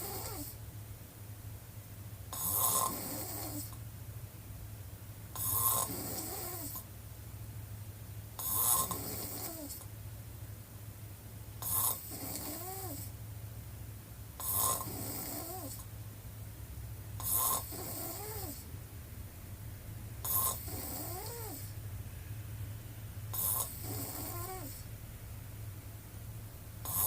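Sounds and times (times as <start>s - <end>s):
woman snoring: 0.0s - 0.6s, 2.3s - 3.8s, 5.4s - 6.8s, 8.4s - 9.8s, 11.6s - 13.1s, 14.4s - 15.9s, 17.2s - 18.6s, 20.2s - 21.7s, 23.3s - 24.9s
steady low hum: 0.0s - 27.0s.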